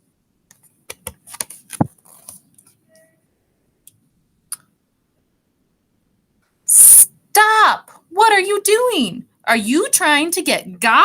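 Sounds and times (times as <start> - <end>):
page turning: 1.0 - 2.7.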